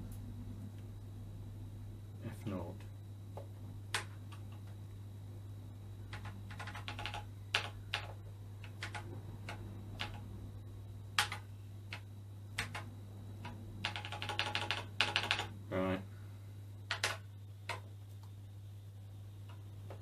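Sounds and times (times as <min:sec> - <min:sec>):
steady low hum: 0:00.0 - 0:20.0
keyboard keys clicking: 0:06.1 - 0:10.2, 0:11.2 - 0:15.5.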